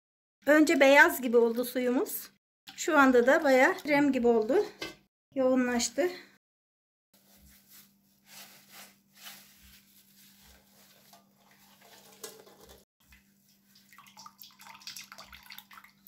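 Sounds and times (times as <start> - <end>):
water trickling and dripping: 11.4 - 16.0.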